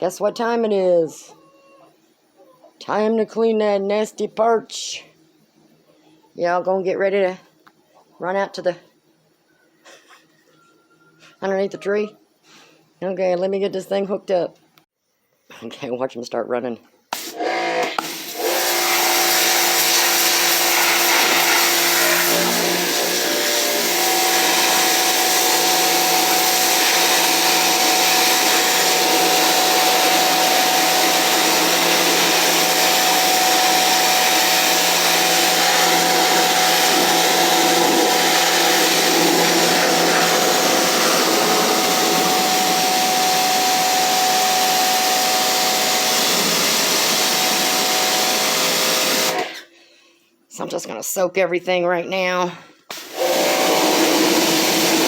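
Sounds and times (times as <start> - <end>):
pressure washer motor hum: 17.2 - 49.6, 52.9 - 55.0
water jet spraying: 18.0 - 43.5.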